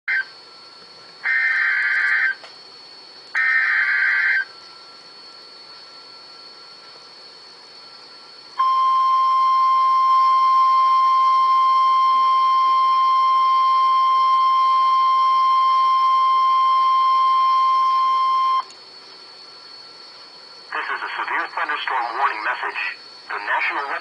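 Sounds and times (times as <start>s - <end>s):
steady alarm tone: 1.2s - 2.5s, 3.3s - 6.9s, 7.8s - 18.7s
faint radio hiss: 18.7s - 24.0s.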